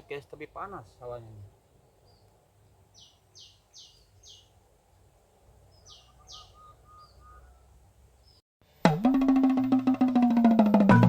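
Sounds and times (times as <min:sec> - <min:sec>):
softer lower bird notes: 0:01.9 - 0:11.0
bird calling high sliding notes: 0:05.8 - 0:07.8.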